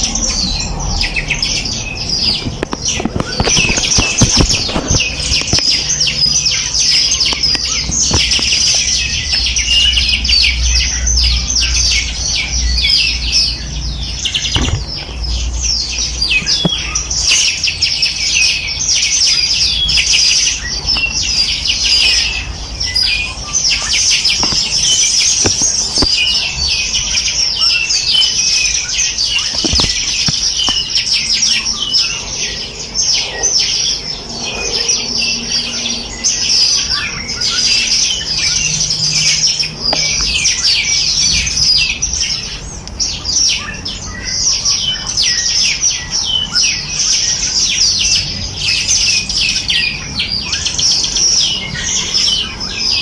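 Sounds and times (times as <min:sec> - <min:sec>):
small birds chirping: 0:00.0 - 0:53.0.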